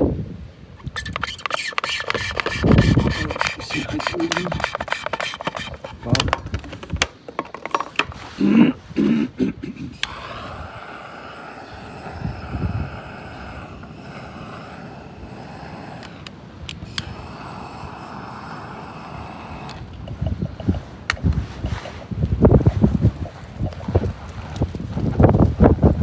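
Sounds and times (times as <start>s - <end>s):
oil burner rushing: 0.8s - 8.5s, 9.9s - 23.8s
low rumbling gusts: 8.0s - 26.0s.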